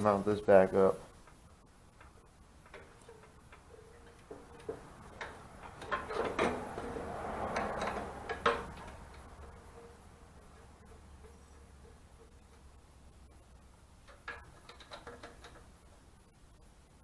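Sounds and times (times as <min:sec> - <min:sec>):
metal parts clicking and knocking: 0:02.0 - 0:12.7, 0:14.0 - 0:15.8.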